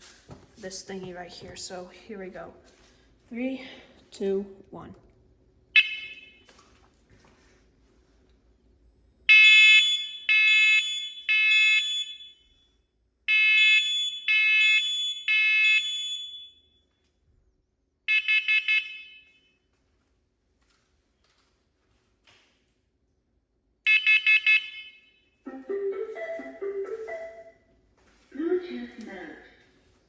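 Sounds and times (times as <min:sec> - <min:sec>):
long high-pitched alarm beeps: 0:09.3 - 0:12.7, 0:13.3 - 0:16.8.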